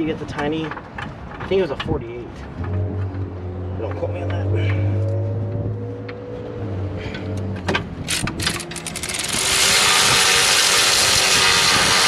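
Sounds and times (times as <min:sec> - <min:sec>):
ratchet wrench ratcheting: 0:08.1 - 0:12.0.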